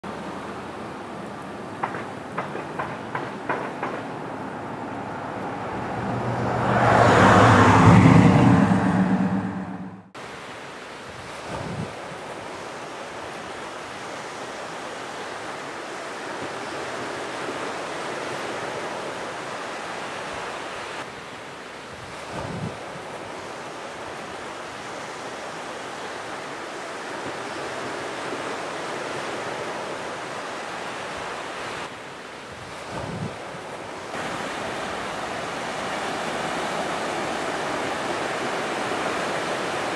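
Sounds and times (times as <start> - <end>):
heavy surf breaking: 1.8 - 10.2, 32.6 - 39.9
vehicle driving past: 4.6 - 10.1.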